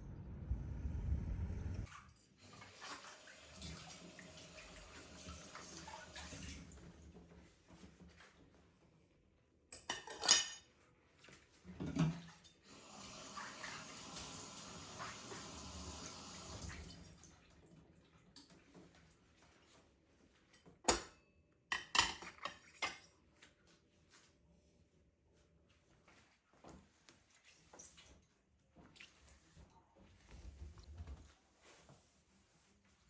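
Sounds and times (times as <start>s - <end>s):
water running from tap: 2.4s - 7.1s, 12.6s - 17.4s
dishes and cutlery clattering: 9.7s - 10.8s, 20.9s - 23.1s.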